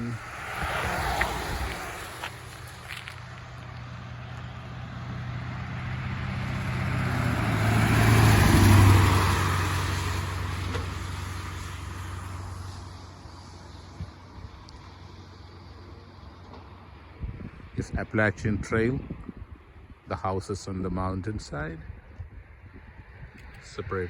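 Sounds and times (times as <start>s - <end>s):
road vehicle driving past: 0.0s - 17.9s.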